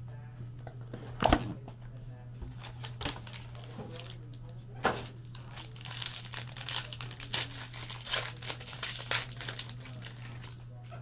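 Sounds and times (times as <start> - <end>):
low electrical hum: 0.0 - 11.0
plastic wrapping crinkling and tearing: 2.5 - 11.0.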